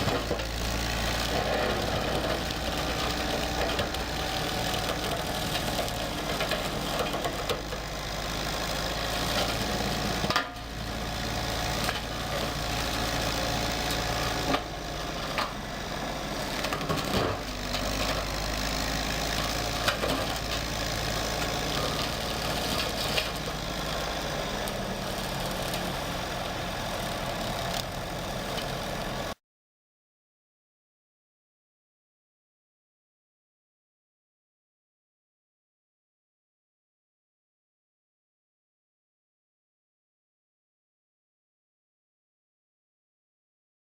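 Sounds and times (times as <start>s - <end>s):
brush-cutting machine running: 0.0s - 29.4s.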